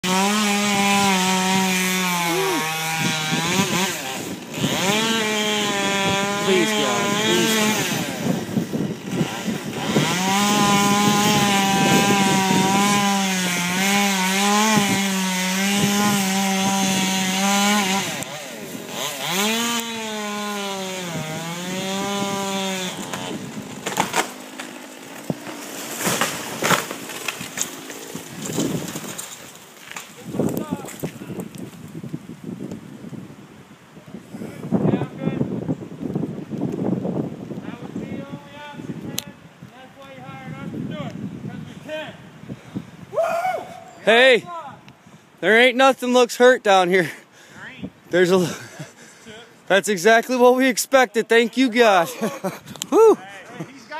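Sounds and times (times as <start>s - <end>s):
chainsaw cutting wood: 0.0s - 31.9s
sharp cracks and knocks: 22.9s - 32.0s.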